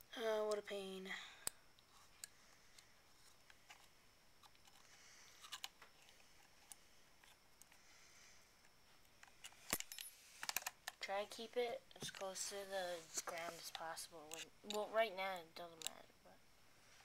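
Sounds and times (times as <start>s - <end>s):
faint clicks and taps: 11.9s - 12.4s.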